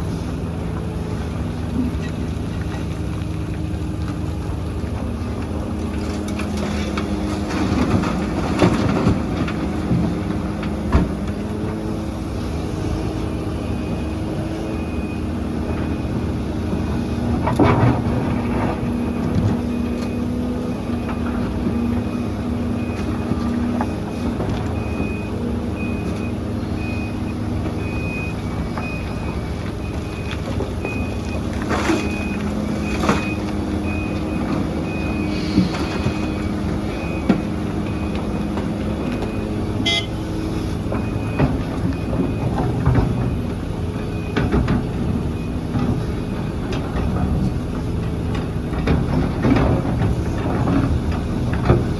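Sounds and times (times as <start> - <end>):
heavy diesel machinery running: 0.0 - 51.9
reversing alarm beeping: 4.5 - 51.9.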